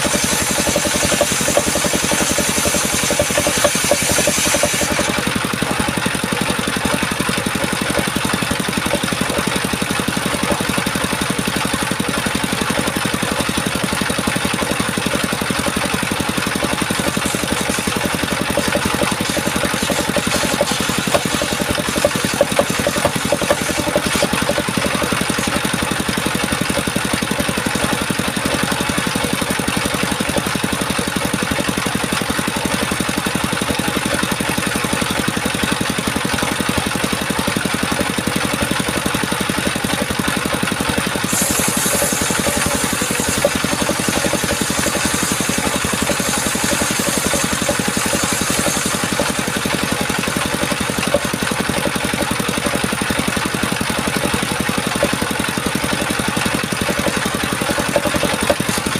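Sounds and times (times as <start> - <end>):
petrol saw engine running: 0.0 - 58.9.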